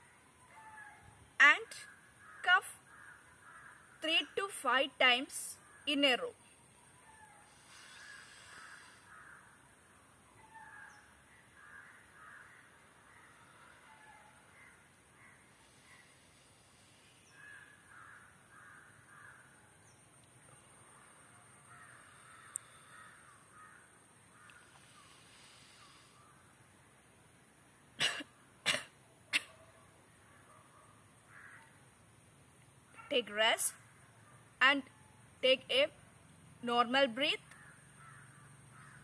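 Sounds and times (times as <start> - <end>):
faint crows cawing: 0.0 - 1.2, 1.8 - 4.2, 5.6 - 26.6, 29.5 - 32.0, 37.4 - 39.0.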